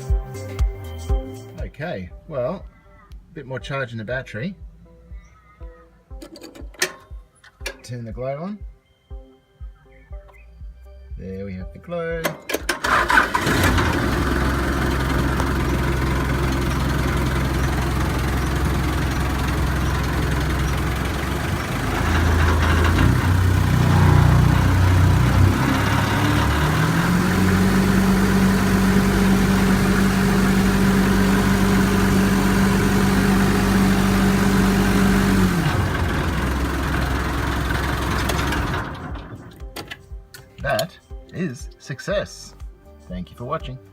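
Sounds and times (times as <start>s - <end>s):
diesel engine idling and revving: 12.8s - 39.7s.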